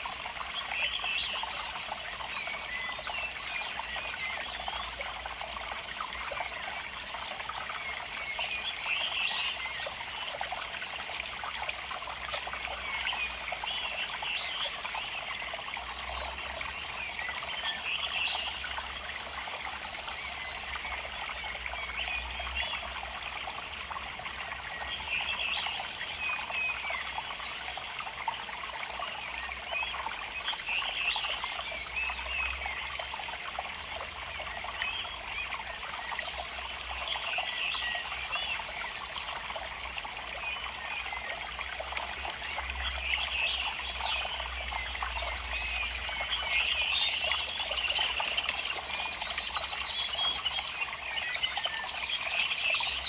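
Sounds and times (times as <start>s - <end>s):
water trickling: 0.0s - 53.0s
birds chirping and trilling: 34.2s - 53.0s.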